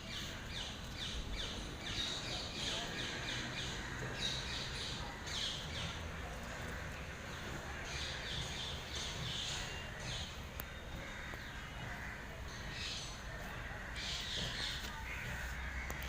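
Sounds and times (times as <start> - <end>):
crows cawing: 10.9 - 16.0.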